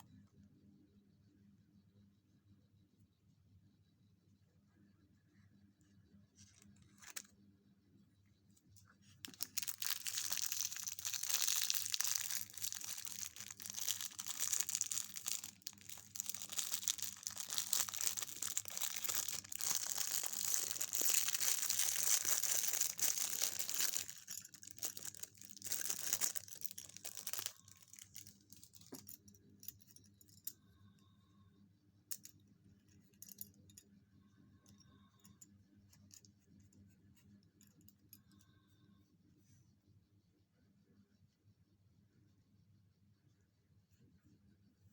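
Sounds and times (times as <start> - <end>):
wrapper crinkling and tearing: 9.3 - 28.9.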